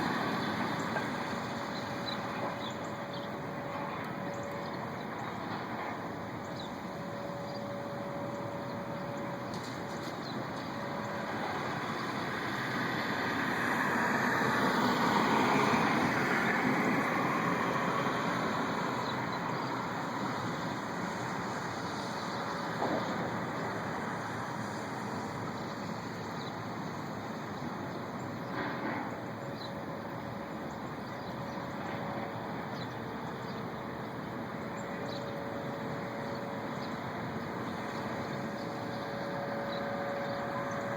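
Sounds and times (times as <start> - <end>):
road vehicle passing: 0.0 - 40.9
steady noisy drone: 0.0 - 40.9.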